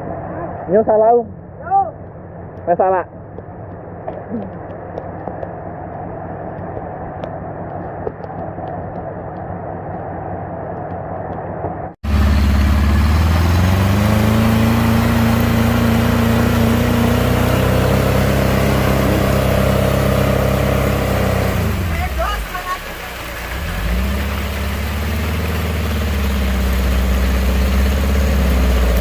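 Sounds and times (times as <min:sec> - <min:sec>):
muffled engine running: 0:00.0 - 0:29.0
engine revving high: 0:12.0 - 0:29.0.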